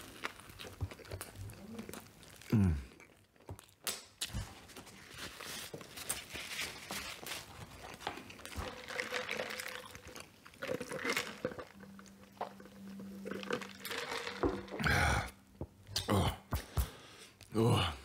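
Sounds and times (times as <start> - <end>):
wet chewing and lip-smacking: 0.0 - 4.6
throaty sound: 12.7 - 18.0.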